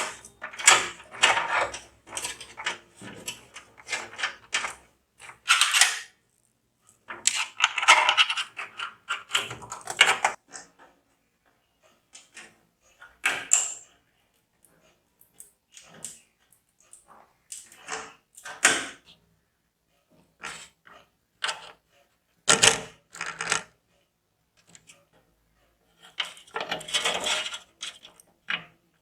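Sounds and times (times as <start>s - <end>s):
computer hardware clicks and clacks: 0.0s - 6.2s, 7.0s - 10.6s, 22.4s - 23.8s, 26.0s - 29.0s.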